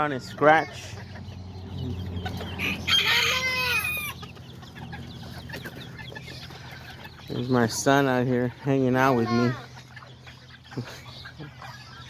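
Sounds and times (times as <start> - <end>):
rooster crowing: 2.6 - 4.2.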